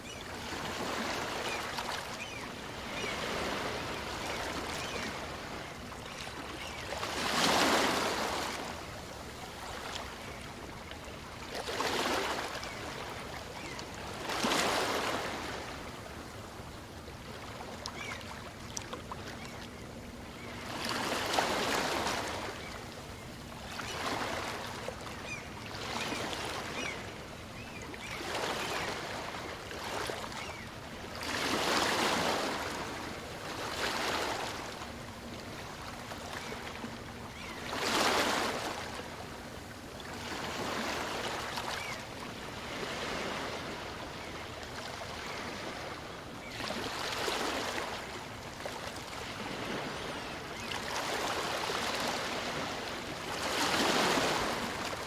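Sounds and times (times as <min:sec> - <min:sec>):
small waves washing on beach: 0:45.0 - 0:55.0.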